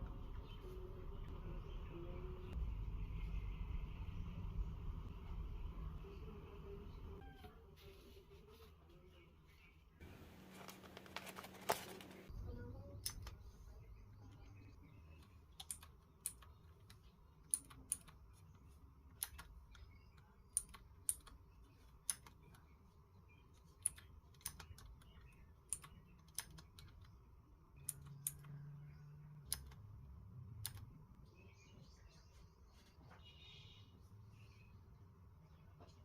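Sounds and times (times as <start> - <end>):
low hum: 0.0 - 7.2.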